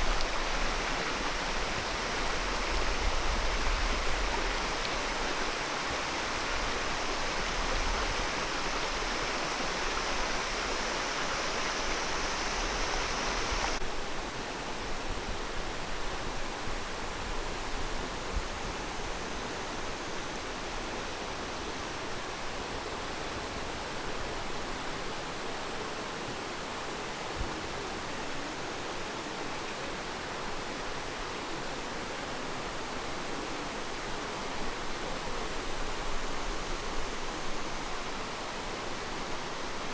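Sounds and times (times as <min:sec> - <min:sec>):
water rushing: 0:00.0 - 0:13.8.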